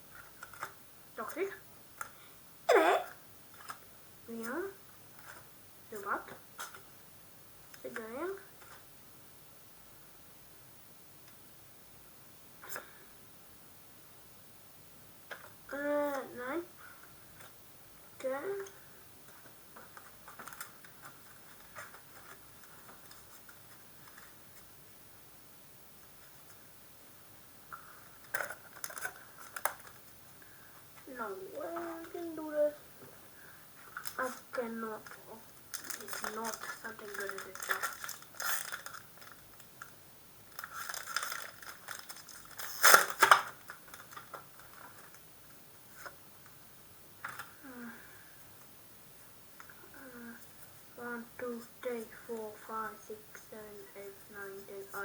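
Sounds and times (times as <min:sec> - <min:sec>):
cards and packaging rustling: 0:00.1 - 0:00.8, 0:05.2 - 0:05.5, 0:19.3 - 0:24.4, 0:27.8 - 0:30.2, 0:33.8 - 0:45.2
wrapper tearing: 0:28.2 - 0:30.0, 0:35.0 - 0:39.9, 0:40.5 - 0:45.2.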